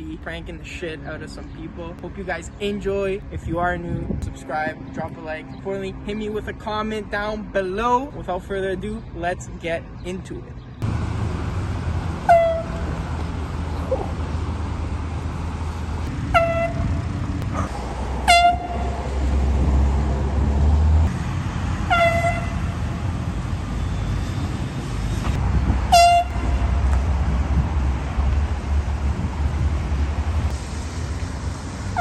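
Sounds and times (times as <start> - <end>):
steady low rumble: 0.0 - 32.0
air horn blasts: 12.2 - 12.9, 16.3 - 17.0, 18.2 - 19.0, 21.9 - 22.9, 25.8 - 26.8.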